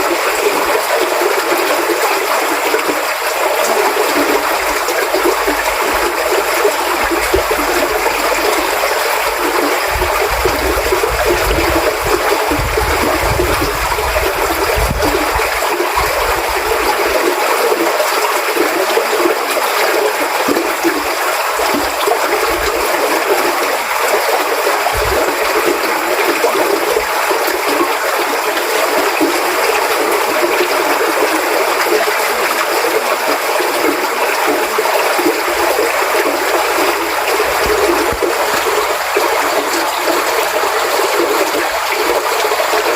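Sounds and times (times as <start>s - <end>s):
stream water flowing: 0.0s - 42.9s.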